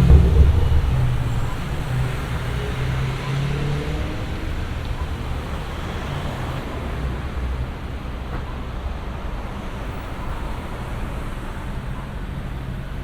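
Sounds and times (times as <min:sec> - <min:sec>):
low engine hum: 0:00.0 - 0:06.4
traffic roar: 0:00.0 - 0:13.0.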